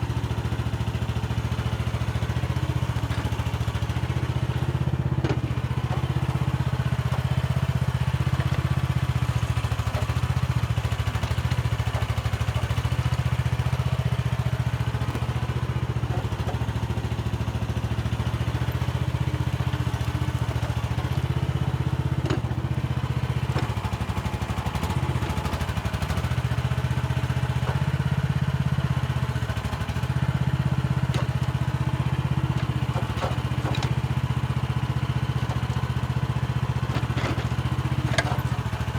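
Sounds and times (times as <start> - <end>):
mini excavator engine running: 0.0 - 38.9
faint clatters: 36.8 - 38.9.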